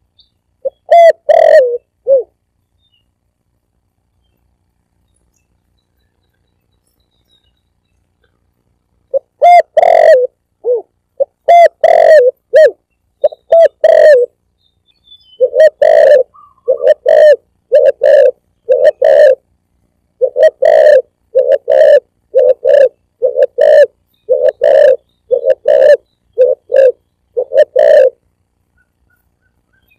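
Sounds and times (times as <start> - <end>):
dove cooing: 0.6 - 2.4, 9.1 - 14.4, 15.4 - 19.5, 20.2 - 28.2.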